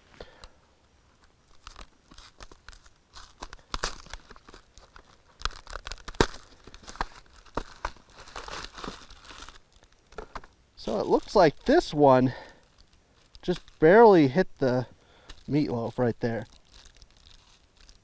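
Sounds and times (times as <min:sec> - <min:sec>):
plastic tray and film crinkling: 0:01.2 - 0:18.0
cardboard box tearing: 0:05.5 - 0:09.6.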